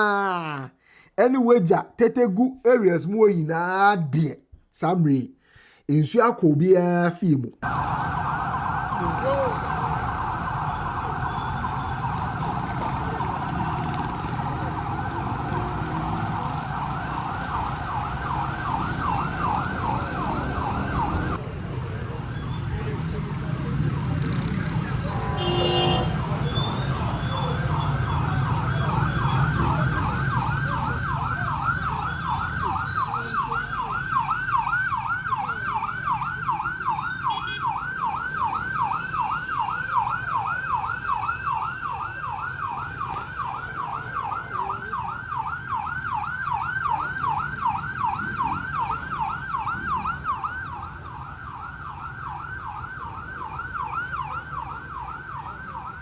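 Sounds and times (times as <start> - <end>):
siren in yelp mode: 7.6 - 21.4, 24.1 - 56.0.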